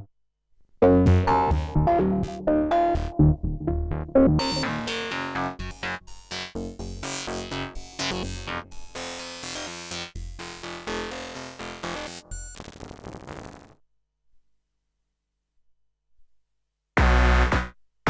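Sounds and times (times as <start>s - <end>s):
synthesizer sequenced notes: 1.2s - 12.8s.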